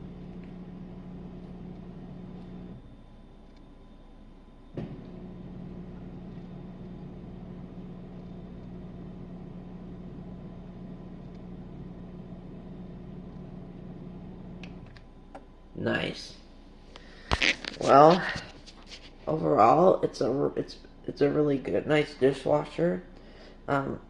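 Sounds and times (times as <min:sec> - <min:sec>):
drain pump humming: 0:00.0 - 0:03.0, 0:04.7 - 0:15.0.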